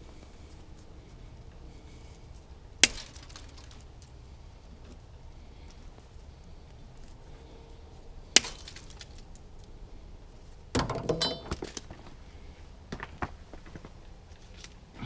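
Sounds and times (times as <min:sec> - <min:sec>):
metal striking metal: 0:10.8 - 0:11.6
metal clinking and clattering: 0:10.8 - 0:11.8.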